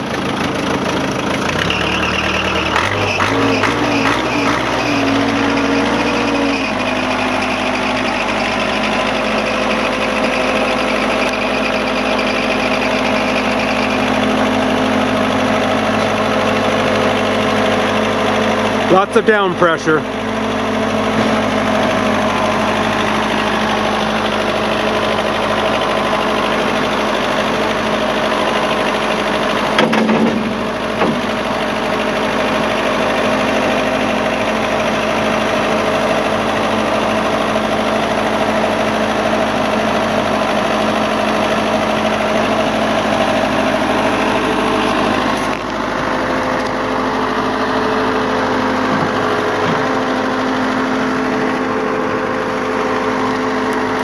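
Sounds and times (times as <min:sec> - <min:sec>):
backhoe engine running: 0:00.0 - 0:54.0
thump: 0:29.8 - 0:31.3.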